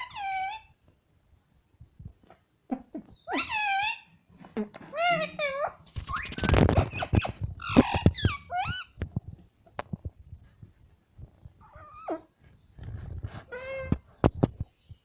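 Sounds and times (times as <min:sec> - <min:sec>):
parrot screeching and warbling: 0:00.0 - 0:00.7, 0:03.0 - 0:04.1, 0:04.9 - 0:09.0, 0:11.6 - 0:12.3.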